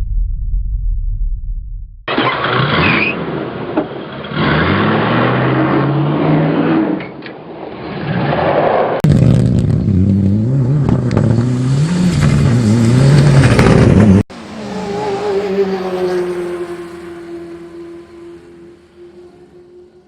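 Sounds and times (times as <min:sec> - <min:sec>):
car engine revving: 0:02.1 - 0:07.0, 0:09.0 - 0:20.0
steady engine drone: 0:09.1 - 0:20.0.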